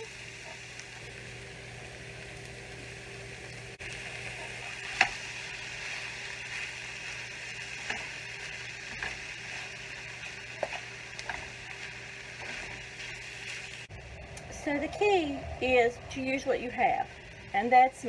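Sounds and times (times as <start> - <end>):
stir-fry sizzling in oil: 0.0 - 14.0.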